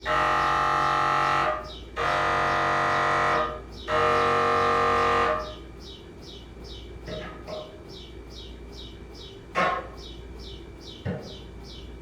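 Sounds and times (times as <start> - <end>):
mri scanner buzzing: 0.0 - 5.6.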